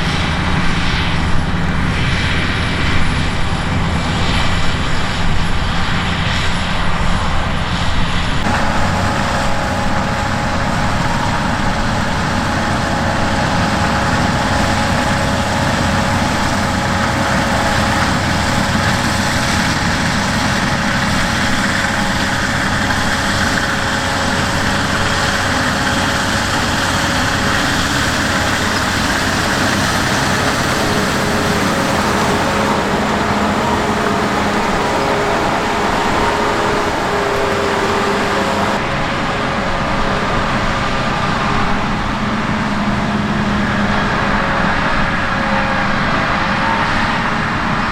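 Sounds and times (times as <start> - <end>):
diesel machinery engine: 0.0 - 47.9
mechanical whine: 0.0 - 47.9.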